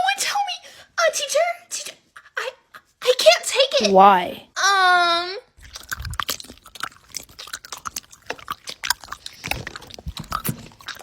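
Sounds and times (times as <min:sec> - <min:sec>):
crisp crunching and clicking: 0:05.6 - 0:11.0.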